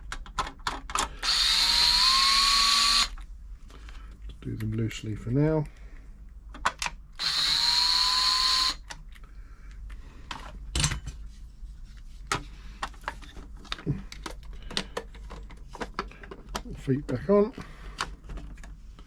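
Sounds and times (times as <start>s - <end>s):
screws and parts clicking: 0.4s - 3.2s, 7.2s - 9.0s
electric screwdriver running: 1.2s - 3.2s, 7.2s - 8.8s.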